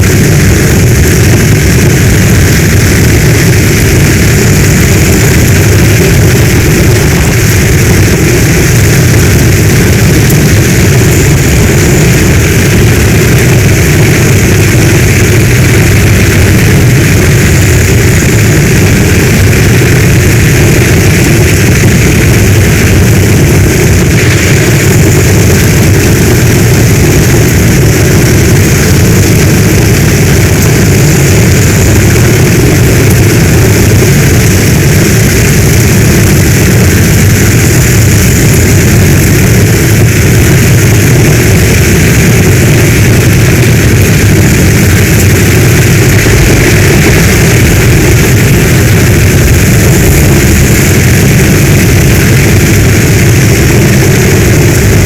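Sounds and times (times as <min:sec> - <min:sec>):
deep rumble: 0:00.0 - 0:55.0
heavy rain pouring: 0:00.0 - 0:55.0.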